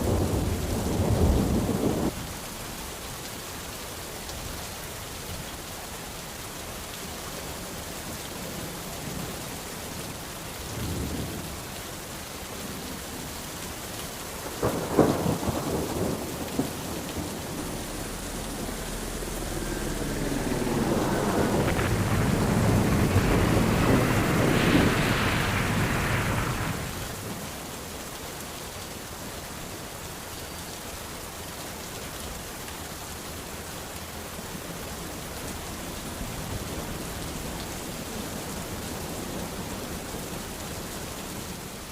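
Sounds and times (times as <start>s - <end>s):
steady rain: 0.0s - 41.9s
thunder rumbling: 14.4s - 27.5s
sharp thunderclap: 14.6s - 27.3s.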